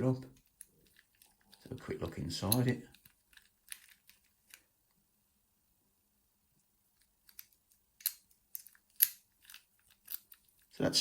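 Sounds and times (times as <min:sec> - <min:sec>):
padlock and key clicking: 0:02.4 - 0:04.7, 0:07.0 - 0:10.7.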